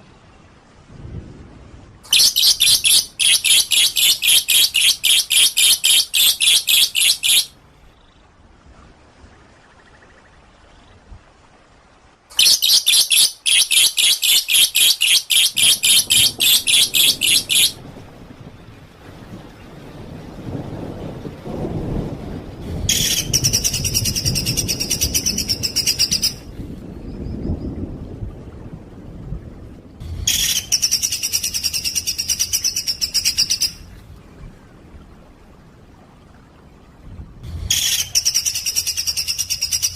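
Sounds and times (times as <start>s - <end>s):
songbird rapid high notes: 2.1s - 7.5s, 12.3s - 17.8s.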